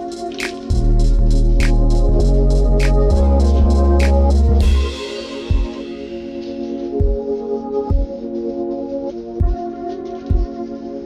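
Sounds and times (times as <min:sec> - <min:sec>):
deep drum beat: 0:00.0 - 0:06.4, 0:07.0 - 0:07.3, 0:07.9 - 0:08.2, 0:09.4 - 0:09.6, 0:10.3 - 0:10.5
held keyboard chords: 0:00.0 - 0:11.0.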